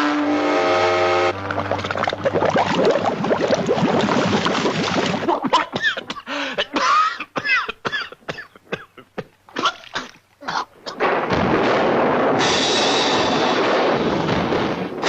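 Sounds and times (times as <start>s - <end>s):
dense noisy effect: 10.8s - 15.0s.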